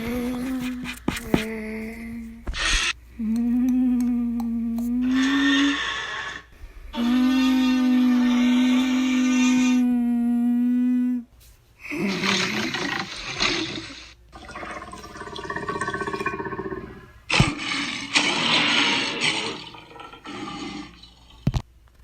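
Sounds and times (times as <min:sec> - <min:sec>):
harsh monster roars: 0:17.3 - 0:21.1.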